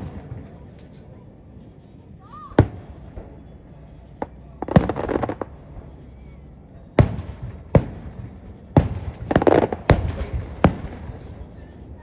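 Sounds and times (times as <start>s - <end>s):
fireworks bangs and pops: 0.0s - 1.1s, 2.6s - 3.4s, 4.2s - 6.0s, 7.0s - 12.0s
fireworks crackling: 0.0s - 1.2s, 4.1s - 6.0s, 7.0s - 12.0s.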